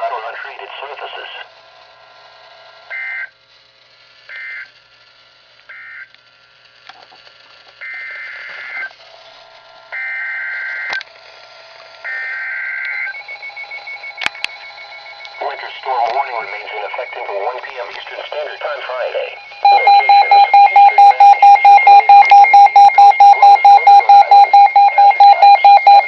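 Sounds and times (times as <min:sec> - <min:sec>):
screeching digital data bursts: 0:12.1 - 0:26.0.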